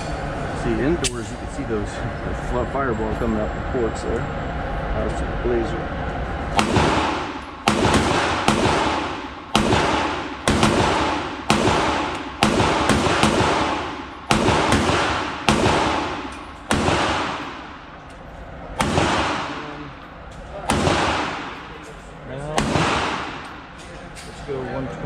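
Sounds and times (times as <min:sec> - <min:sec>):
pistol shots echoing: 0:06.6 - 0:18.2, 0:18.8 - 0:19.9, 0:20.6 - 0:21.9, 0:22.5 - 0:23.8.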